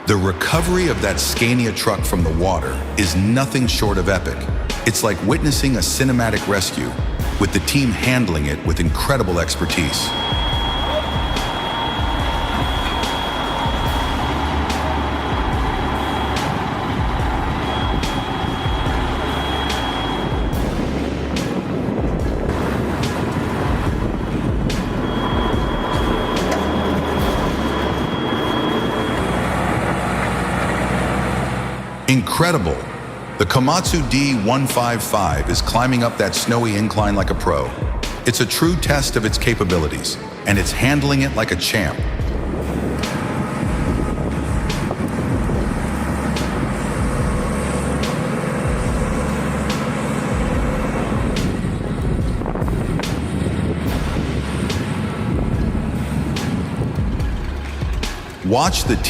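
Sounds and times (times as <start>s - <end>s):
diesel engine under load: 0.0s - 59.0s
thin high whine: 9.4s - 37.0s.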